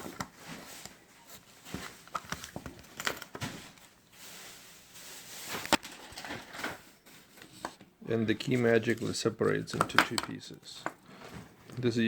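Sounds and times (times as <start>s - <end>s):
soft scraping rustle: 3.6s - 7.7s.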